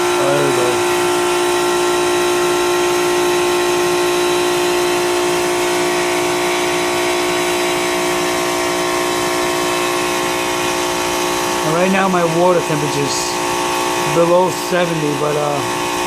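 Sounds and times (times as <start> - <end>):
chiller mechanical hum: 0.0 - 16.0.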